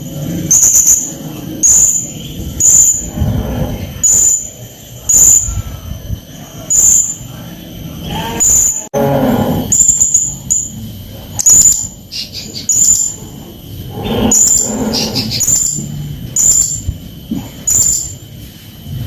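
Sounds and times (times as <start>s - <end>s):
parrot chirping: 9.7s - 18.2s.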